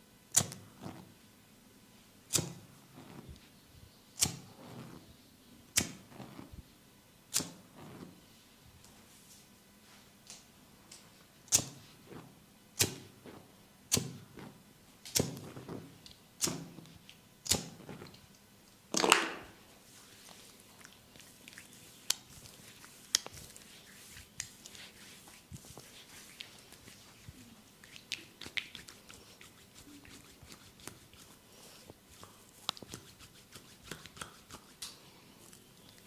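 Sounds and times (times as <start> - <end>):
hands slapping on skin: 22.0 - 31.4, 32.2 - 35.0.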